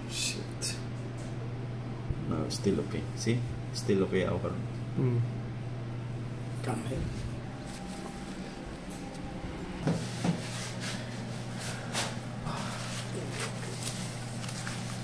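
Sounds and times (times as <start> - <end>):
steady low hum: 0.0 - 15.0
clicks and rustles of handling: 13.0 - 15.0.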